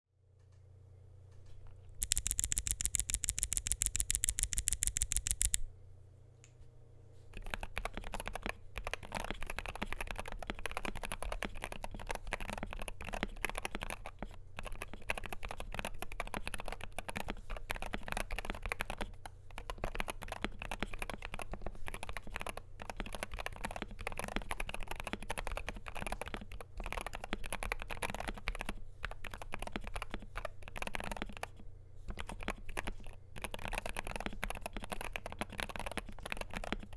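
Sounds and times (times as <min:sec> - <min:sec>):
keyboard typing clicks: 0:02.0 - 0:05.7.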